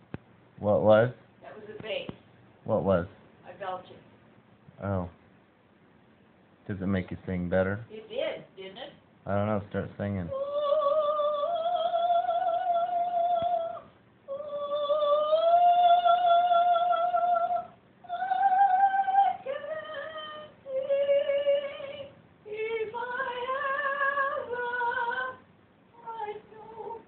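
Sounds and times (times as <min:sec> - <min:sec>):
woman singing unaccompanied: 0:10.3 - 0:27.0.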